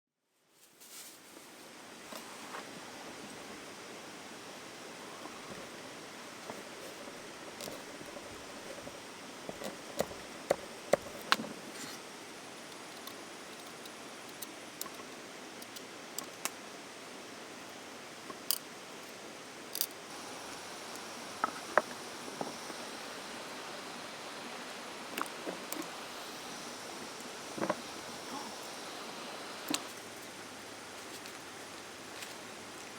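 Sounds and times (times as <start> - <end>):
steady low hiss: 0.2 - 32.9.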